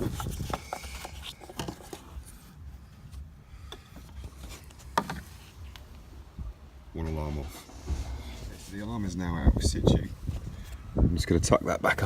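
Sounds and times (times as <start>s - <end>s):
wind rumble on microphone: 0.0s - 0.7s, 9.0s - 12.0s.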